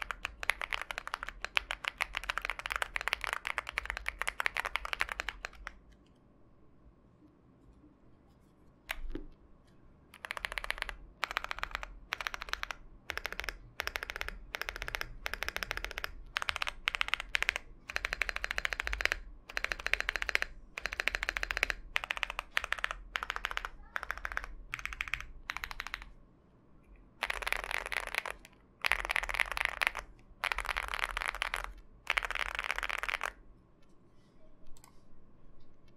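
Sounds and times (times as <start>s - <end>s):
mechanical keyboard typing: 0.0s - 5.8s, 10.1s - 26.1s, 27.2s - 33.4s.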